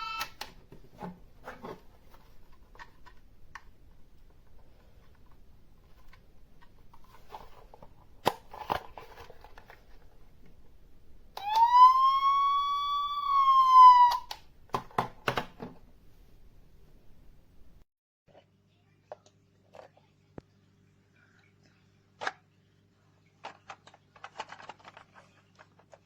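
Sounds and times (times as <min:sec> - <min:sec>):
toy siren wail: 0:11.4 - 0:14.3.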